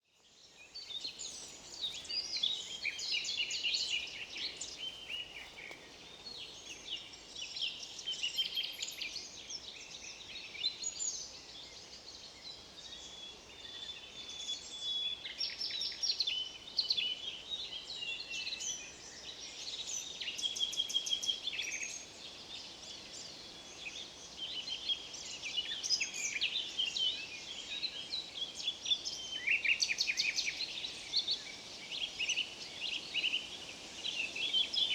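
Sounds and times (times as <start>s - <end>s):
songbirds singing: 0.0s - 34.9s.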